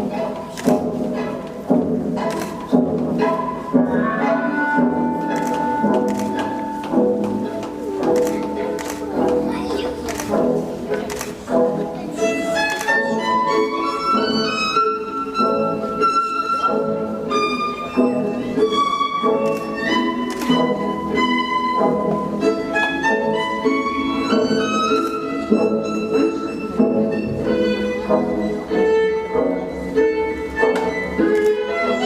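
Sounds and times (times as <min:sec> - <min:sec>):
classical violin and strings melody: 0:00.0 - 0:32.0.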